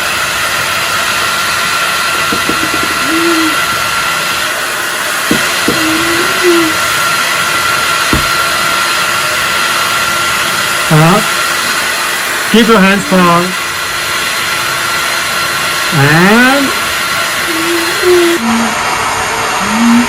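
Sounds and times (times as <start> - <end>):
hair dryer blowing: 0.0 - 20.0
low voice humming: 2.2 - 3.9, 5.2 - 7.1, 15.9 - 16.8, 17.4 - 20.0.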